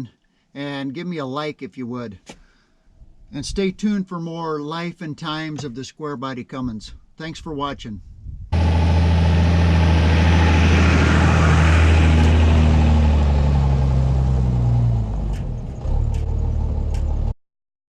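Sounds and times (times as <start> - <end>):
diesel truck engine running: 8.6 - 17.4.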